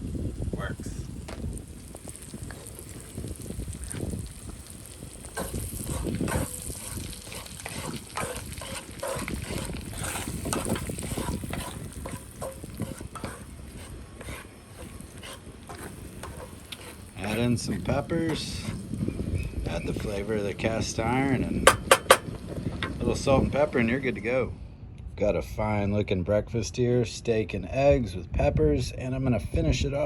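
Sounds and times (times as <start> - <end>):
food sizzling with pops: 0.0 - 23.3
utensil scraping in pan: 1.8 - 23.1.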